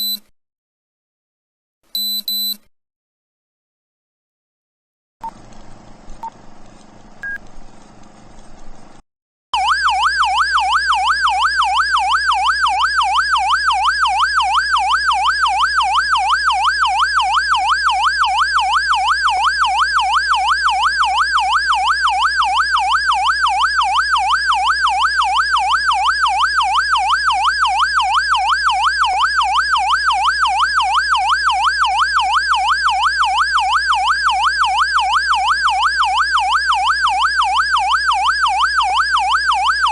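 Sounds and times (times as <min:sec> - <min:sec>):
short beeps: 0:00.0 - 0:00.3, 0:02.0 - 0:02.6
police siren warble: 0:09.6 - 0:39.9.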